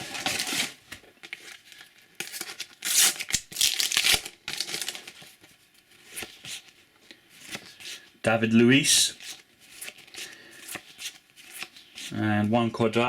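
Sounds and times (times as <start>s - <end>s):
paper sticker packet crinkling: 0.0s - 6.8s.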